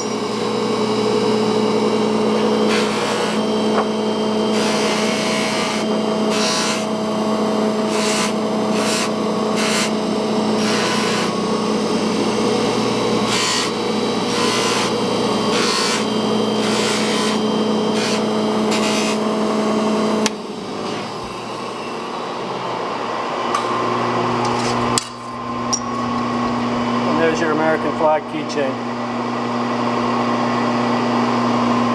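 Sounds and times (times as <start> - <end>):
polishing machine running: 0.0 - 31.9
steel rasping against polisher: 13.3 - 19.2.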